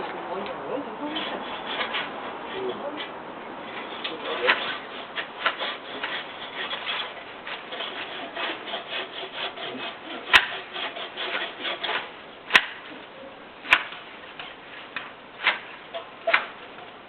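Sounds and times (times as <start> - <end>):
hand saw cutting wood: 1.0 - 16.6
wood cracking: 9.4 - 17.0.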